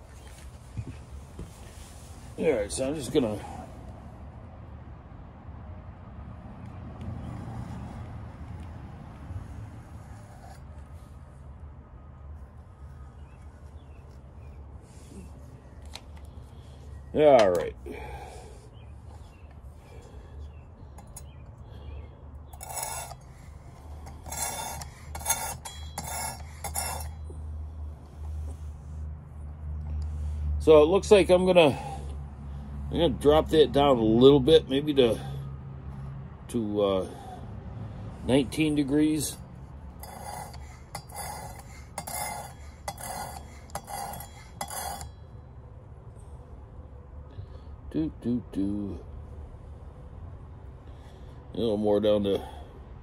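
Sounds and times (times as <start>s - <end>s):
sharpener rasping along knife edge: 22.6s - 27.2s, 40.0s - 45.1s.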